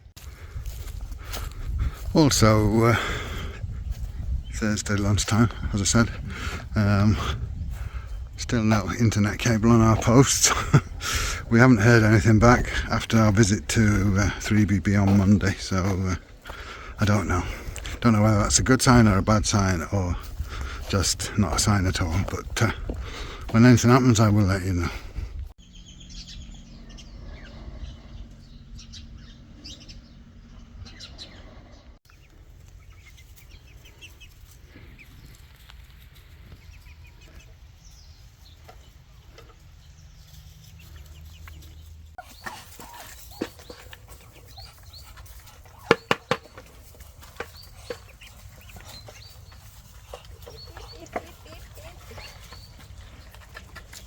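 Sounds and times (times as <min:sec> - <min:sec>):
chickens clucking: 0:00.0 - 0:25.4, 0:26.5 - 0:54.0.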